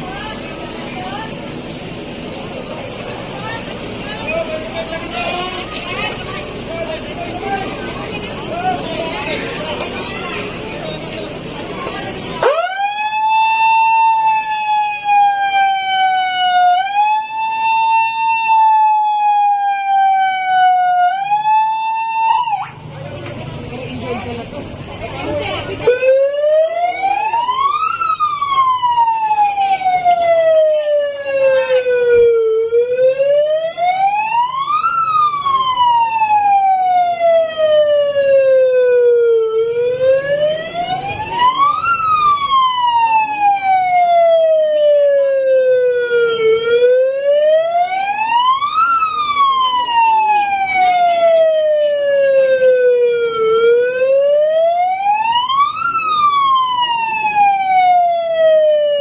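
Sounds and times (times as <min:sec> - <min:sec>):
wailing siren: 0:12.4 - 0:22.9, 0:25.8 - 0:59.0.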